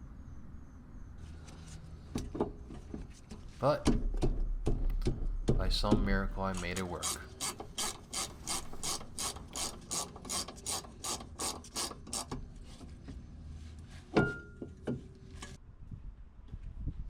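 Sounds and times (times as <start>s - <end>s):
ratchet wrench clicking: 6.5s - 12.3s.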